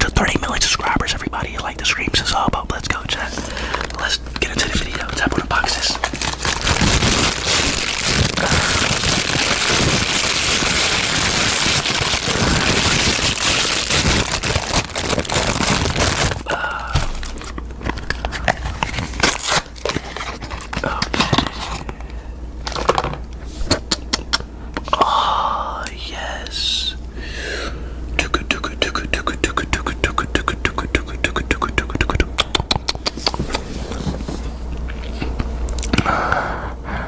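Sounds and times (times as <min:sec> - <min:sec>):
packaging crinkling and tearing: 0:03.1 - 0:21.9, 0:22.6 - 0:23.0
sharp crackles and clicks: 0:06.1 - 0:16.4.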